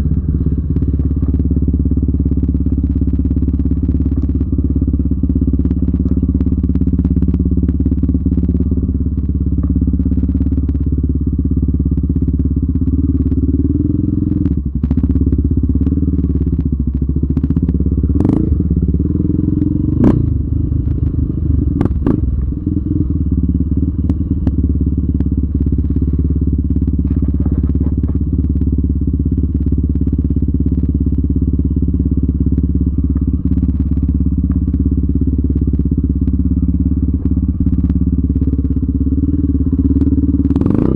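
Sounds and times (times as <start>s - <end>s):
quad bike engine revving: 17.4s - 24.6s, 37.5s - 40.9s.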